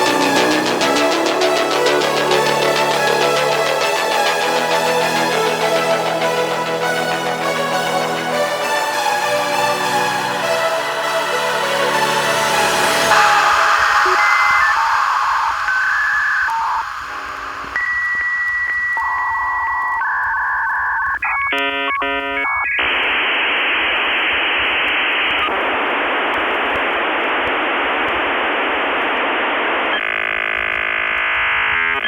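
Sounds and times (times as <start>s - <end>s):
dial-up modem handshake: 13.2s - 29.3s.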